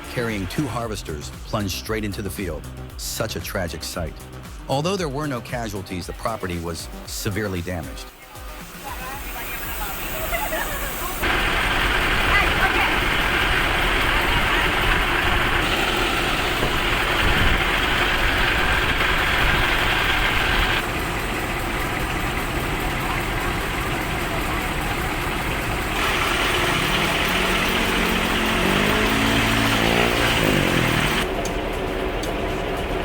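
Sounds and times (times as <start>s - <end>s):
heavy vehicle engines running: 0.0s - 7.4s, 8.1s - 33.0s
engine revving: 11.0s - 33.0s.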